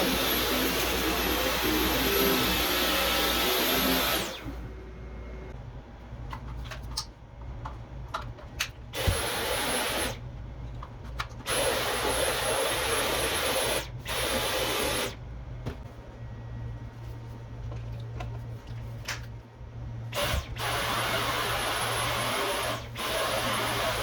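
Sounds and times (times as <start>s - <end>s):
vacuum cleaner motor whine: 0.0s - 5.5s.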